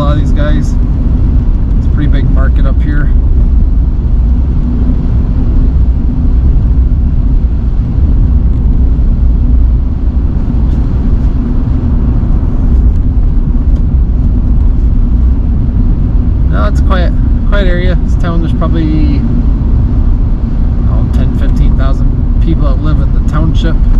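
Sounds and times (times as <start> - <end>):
car road and engine rumble: 0.0 - 23.9.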